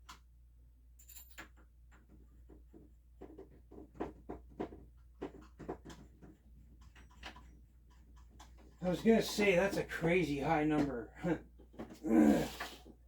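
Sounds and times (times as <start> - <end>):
light irregular clicks and knocks: 1.0 - 9.4.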